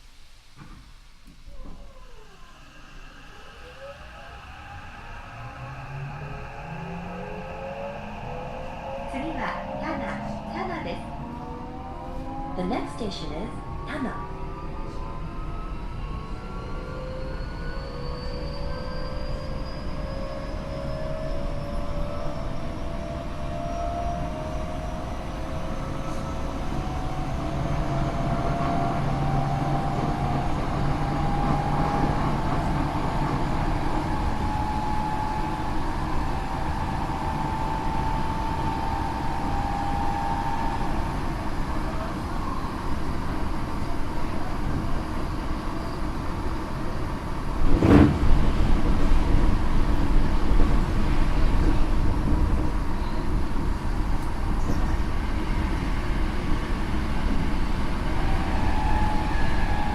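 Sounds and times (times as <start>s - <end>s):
train motor whine rising: 1.6s - 42.7s
train running rumble: 19.6s - 59.9s.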